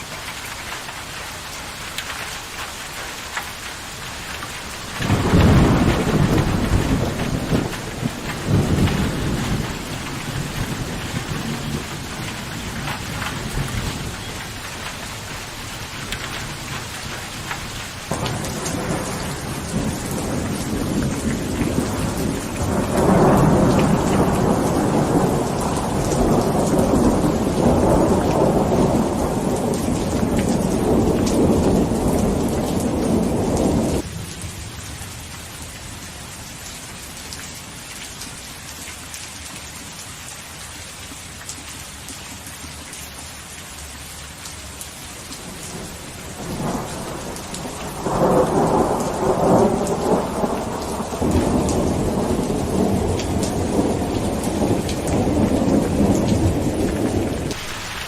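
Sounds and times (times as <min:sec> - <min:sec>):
heavy rain falling: 0:00.0 - 0:58.0
rolling thunder rumble: 0:05.0 - 0:14.9, 0:18.1 - 0:34.1, 0:45.7 - 0:58.0.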